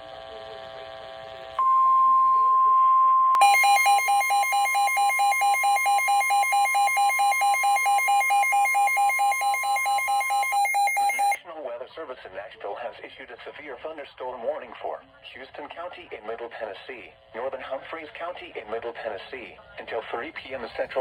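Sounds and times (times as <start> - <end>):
pulsing warble alarm: 1.6 - 11.4
steady warning alert tone: 3.4 - 11.4.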